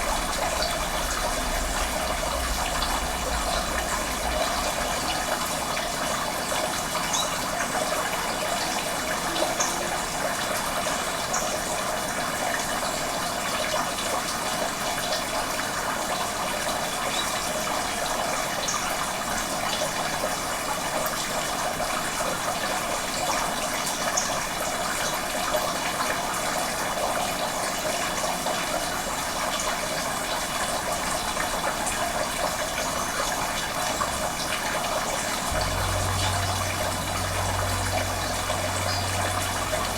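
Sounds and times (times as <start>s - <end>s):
running water rushing: 0.0s - 21.4s, 28.7s - 39.9s.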